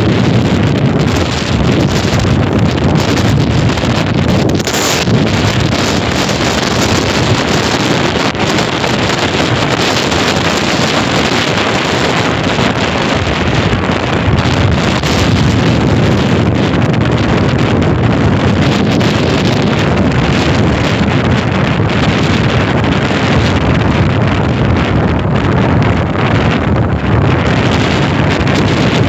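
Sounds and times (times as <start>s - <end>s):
strong wind over microphone: 0.0s - 29.0s.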